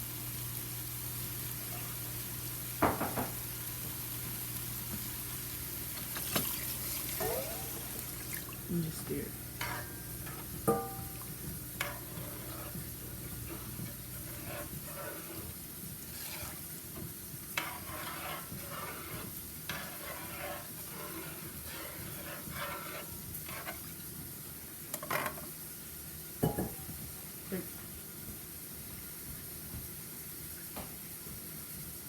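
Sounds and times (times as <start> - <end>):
pot sizzling: 0.0 - 32.0
spoon scraping in a pot: 6.0 - 8.6, 9.4 - 23.9, 24.9 - 25.5.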